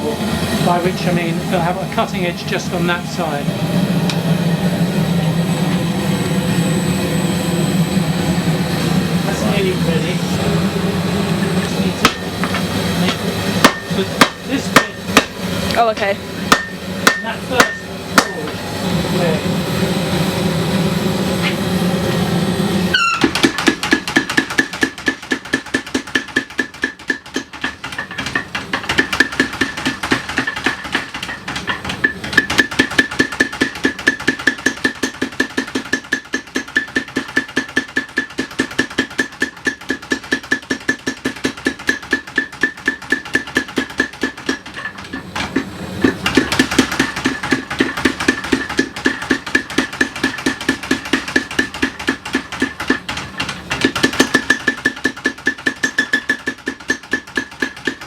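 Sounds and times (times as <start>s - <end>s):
steady rushing noise: 0.0s - 22.9s
power hammer striking hot steel: 7.7s - 58.0s.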